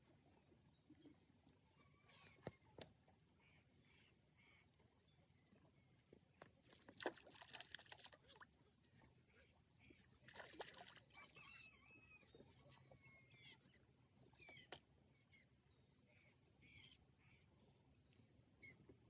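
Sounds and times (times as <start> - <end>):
small birds chirping: 9.3 - 17.4.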